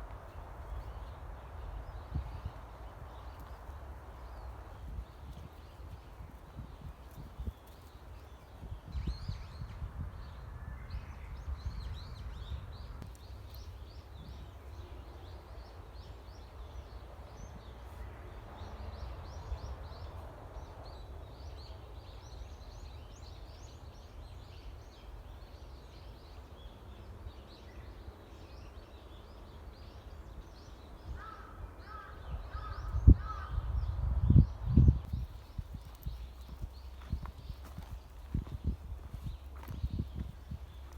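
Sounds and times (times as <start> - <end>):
birds chirping: 29.8 - 40.9.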